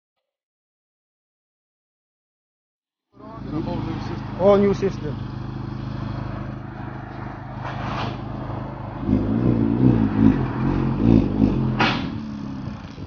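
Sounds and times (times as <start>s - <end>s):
car engine idling and revving: 3.2s - 13.0s.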